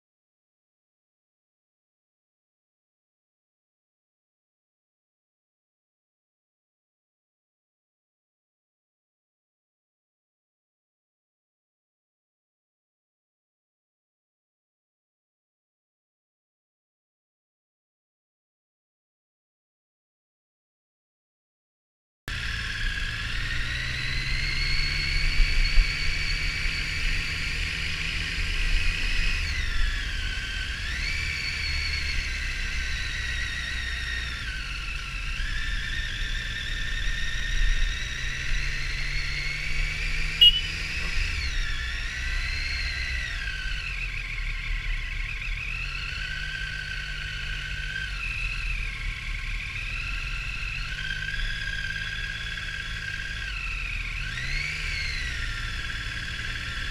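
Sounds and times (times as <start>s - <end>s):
motorcycle engine whine: 22.3s - 56.9s
wind and road rumble: 22.3s - 56.9s.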